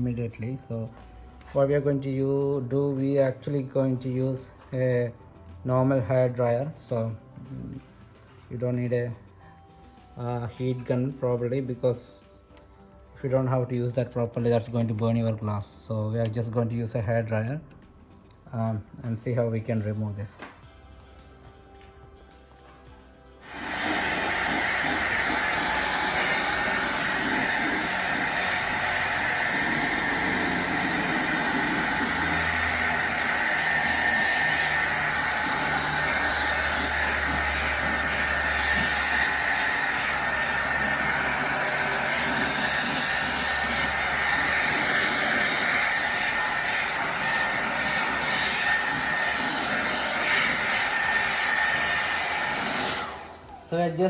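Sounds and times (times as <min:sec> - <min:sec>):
hair dryer running: 0:23.4 - 0:54.0.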